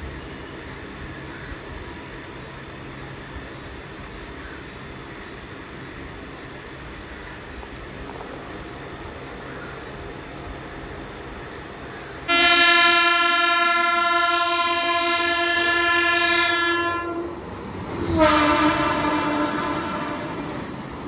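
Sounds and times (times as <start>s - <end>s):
train horn blasts: 12.2s - 20.8s.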